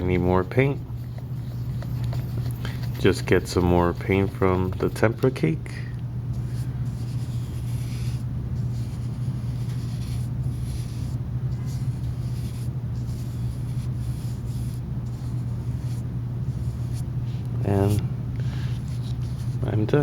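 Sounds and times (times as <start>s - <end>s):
paintbrush swishing on paper: 0.5s - 5.3s, 6.4s - 19.7s.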